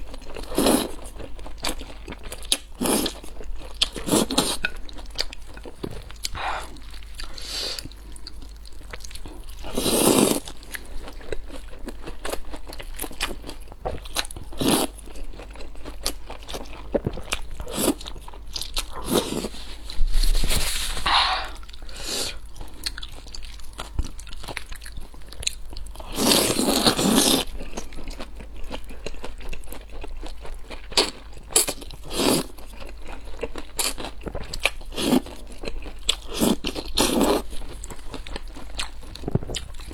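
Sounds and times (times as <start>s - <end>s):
crunchy chewing: 0.0s - 19.8s, 21.0s - 39.9s.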